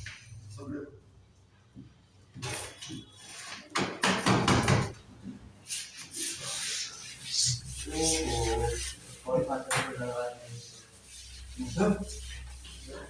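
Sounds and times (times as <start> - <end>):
hissing rub: 5.6 - 13.0.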